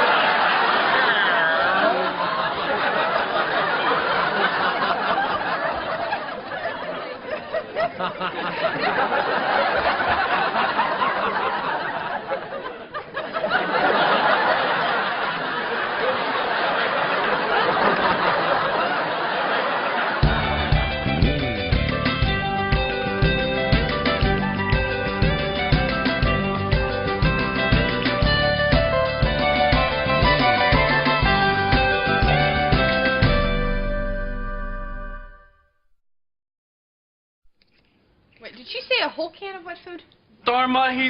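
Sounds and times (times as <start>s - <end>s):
studio audience laughing: 0.0s - 22.3s, 23.9s - 28.3s
sitcom transition music: 20.2s - 35.7s.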